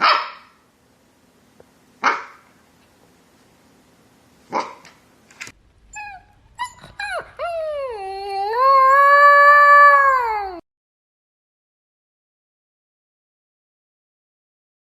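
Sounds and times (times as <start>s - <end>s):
dog barking: 0.0s - 0.6s, 2.0s - 2.5s, 4.5s - 4.8s
dog howling: 5.9s - 10.6s
dog yelping: 5.9s - 10.6s.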